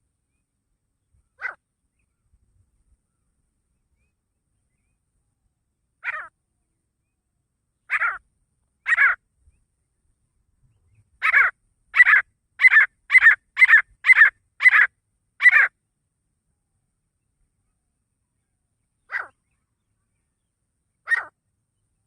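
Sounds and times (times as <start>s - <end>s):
francolin calling: 6.0s - 6.4s, 7.8s - 8.2s, 8.8s - 9.2s, 11.2s - 15.8s, 19.0s - 20.3s, 21.0s - 21.4s.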